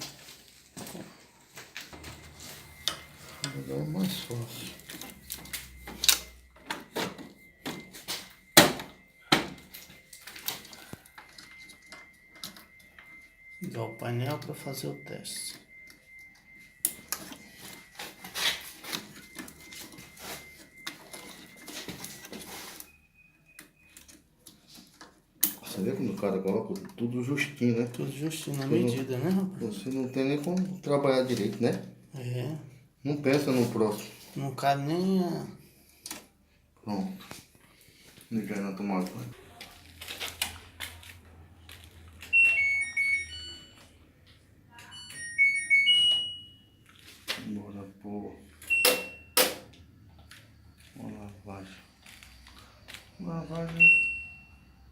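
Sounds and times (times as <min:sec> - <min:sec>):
high electronic beeps: 0:01.8 - 0:24.1, 0:42.2 - 0:44.0, 0:44.7 - 0:46.7, 0:48.5 - 0:49.5, 0:53.7 - 0:54.9.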